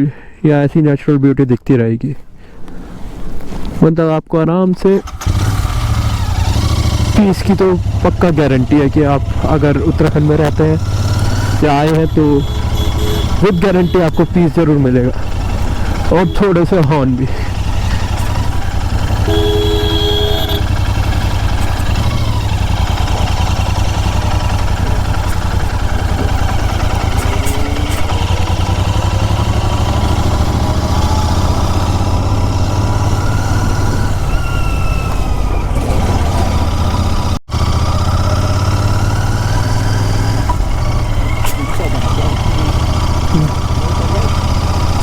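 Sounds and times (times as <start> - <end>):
motorcycle engine running: 5.0 - 45.0
vehicle horn: 11.7 - 17.0, 17.6 - 31.0.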